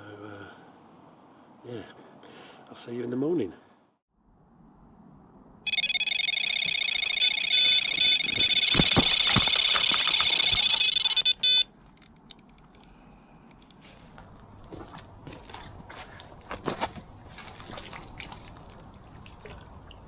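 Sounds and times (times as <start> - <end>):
bite alarm high electronic tone: 5.7 - 11.6
short electronic beep: 5.7 - 11.7.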